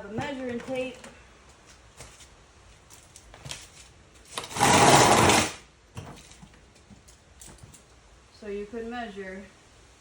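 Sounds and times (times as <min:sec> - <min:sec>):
tape measure blade rattling out: 0:03.5 - 0:05.6.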